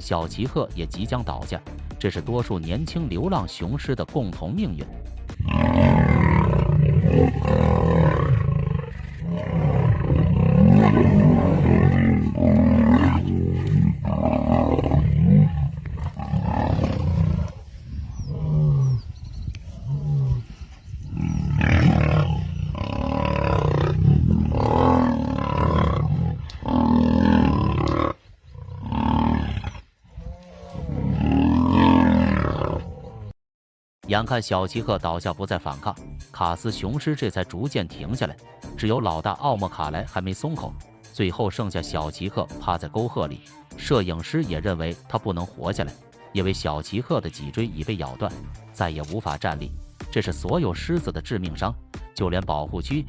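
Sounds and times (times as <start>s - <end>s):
lions roaring: 5.4s - 33.3s.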